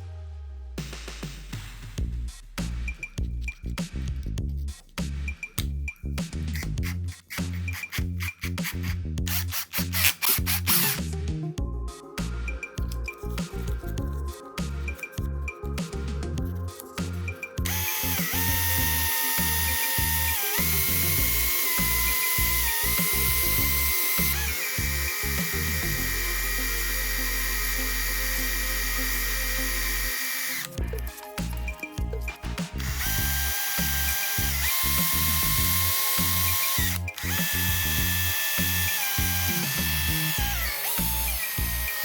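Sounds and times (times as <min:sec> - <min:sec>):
background music: 0:00.0 - 0:42.0
power tool motor whining: 0:09.3 - 0:11.0, 0:17.6 - 0:30.8, 0:32.8 - 0:42.0.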